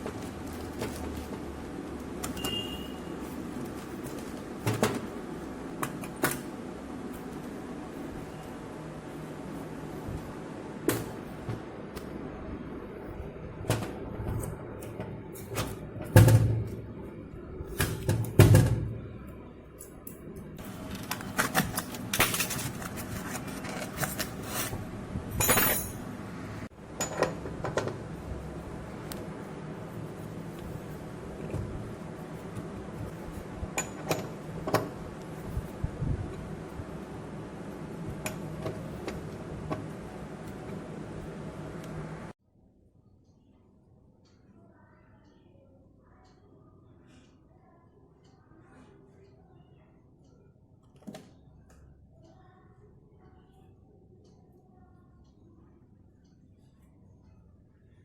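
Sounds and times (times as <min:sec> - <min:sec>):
steady low hum: 0:00.0 - 0:44.2.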